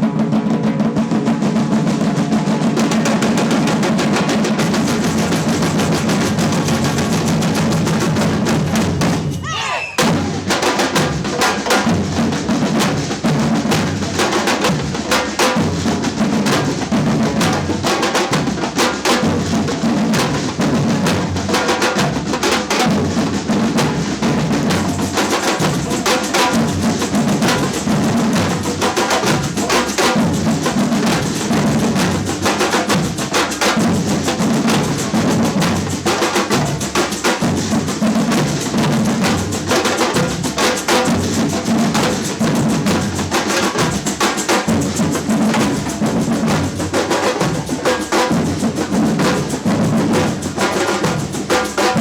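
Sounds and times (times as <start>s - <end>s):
samba percussion band drumming: 0.0s - 52.0s.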